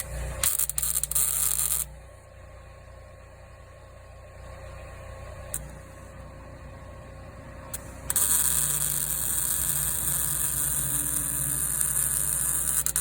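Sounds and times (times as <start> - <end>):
welder humming: 0.0 - 2.2, 4.3 - 13.0
welding arc sizzling crackle: 0.0 - 2.3, 5.3 - 6.8, 7.6 - 13.0.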